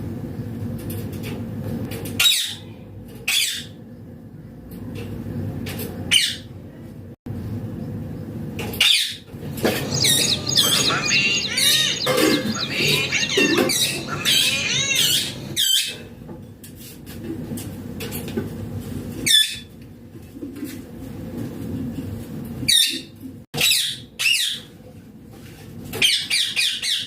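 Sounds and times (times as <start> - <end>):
parakeet chattering and screeching: 9.6 - 15.9.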